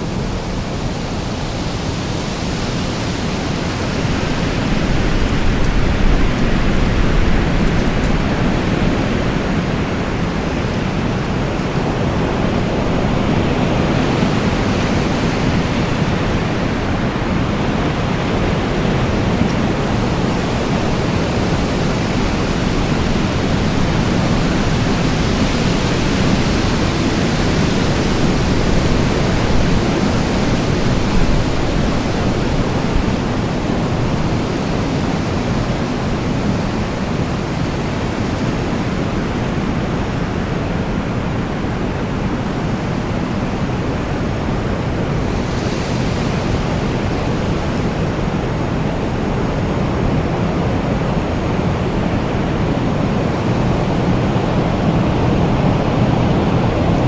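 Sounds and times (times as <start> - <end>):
wind rumbling and hissing: 0.0 - 57.0.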